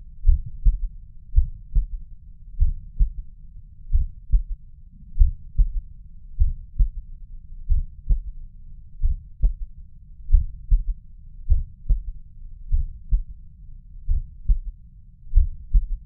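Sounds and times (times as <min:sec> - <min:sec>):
heartbeat through stethoscope: 0:00.2 - 0:02.0, 0:02.6 - 0:03.3, 0:03.9 - 0:04.6, 0:05.2 - 0:07.0, 0:07.6 - 0:08.4, 0:09.0 - 0:09.7, 0:10.3 - 0:13.3, 0:14.0 - 0:16.0.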